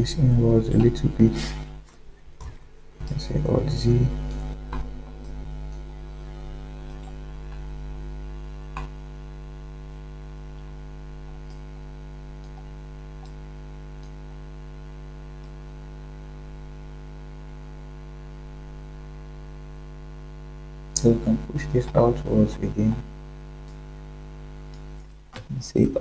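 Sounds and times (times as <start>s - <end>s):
electrical mains hum: 0.0s - 26.0s
faint ticks: 11.3s - 11.7s, 12.3s - 14.2s, 23.6s - 25.5s.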